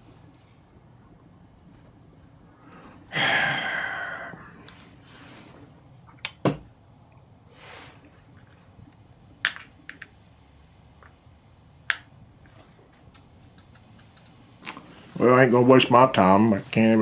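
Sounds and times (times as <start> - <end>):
soft breathy rush: 2.4 - 5.8
sharp clicks: 13.1 - 14.8.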